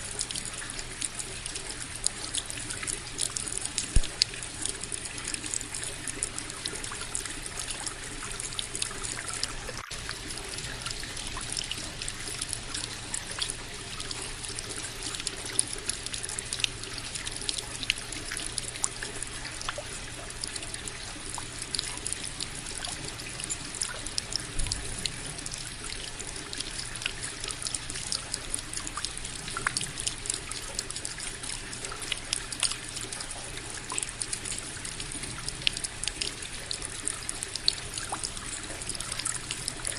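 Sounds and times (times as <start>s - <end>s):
water fountain trickling: 0.0s - 39.9s.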